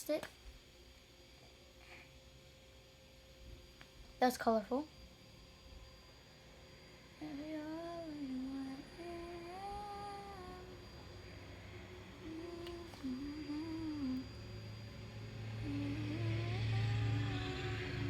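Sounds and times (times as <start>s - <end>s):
low steady drone: 0.8s - 18.0s
woman humming: 7.2s - 10.9s, 12.2s - 14.6s, 15.5s - 18.0s.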